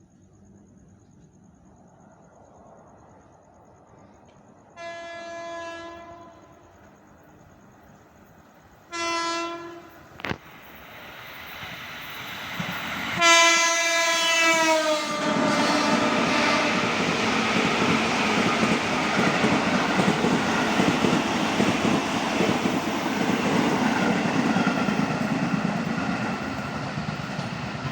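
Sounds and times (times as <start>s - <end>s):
train passing: 0.1s - 27.9s
train horn blasts: 4.8s - 6.8s, 8.9s - 10.0s, 13.2s - 16.9s.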